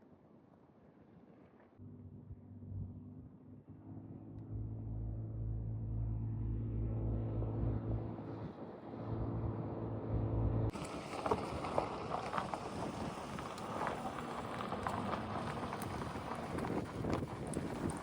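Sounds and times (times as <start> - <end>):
vehicle engine humming: 1.8 - 18.0
wind noise on microphone: 10.6 - 18.0.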